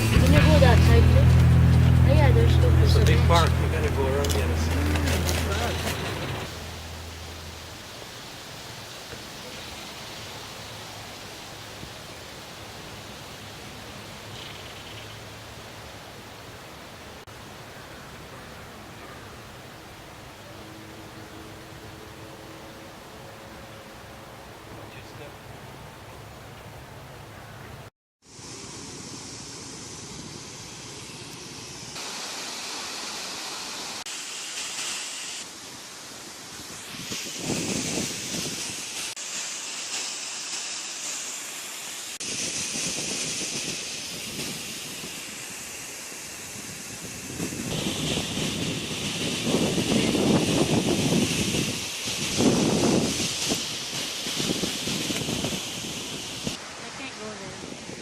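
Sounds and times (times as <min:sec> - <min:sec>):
waterfall rushing: 0:00.0 - 0:14.4, 0:31.7 - 0:58.0.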